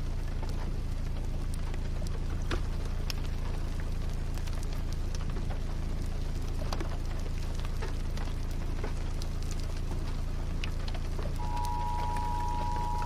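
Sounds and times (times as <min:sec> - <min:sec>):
rain falling: 0:00.0 - 0:13.0
raindrops ticking: 0:00.0 - 0:13.0
low rumble: 0:11.0 - 0:13.0.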